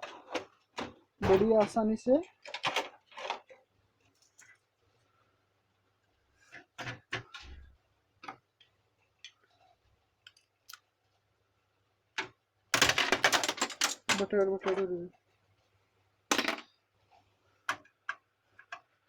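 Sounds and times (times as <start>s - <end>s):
plastic parts clicking and knocking: 0.0s - 4.6s, 6.4s - 9.6s, 12.1s - 15.0s, 16.3s - 16.8s, 17.6s - 19.0s.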